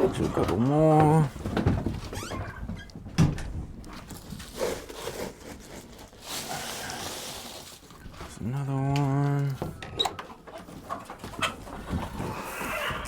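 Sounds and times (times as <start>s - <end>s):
rustling: 3.8s - 9.6s
grain feed pouring: 6.2s - 7.9s.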